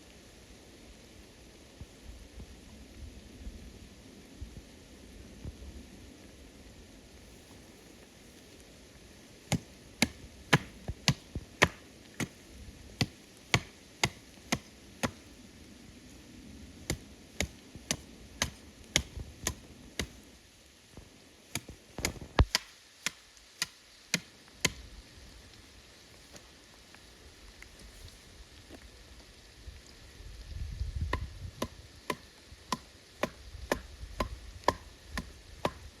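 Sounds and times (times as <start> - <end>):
rain hiss: 0.0 - 36.0
chopping strikes on wood: 9.5 - 12.4, 13.0 - 15.2, 16.9 - 20.2, 21.5 - 24.8, 31.1 - 35.8.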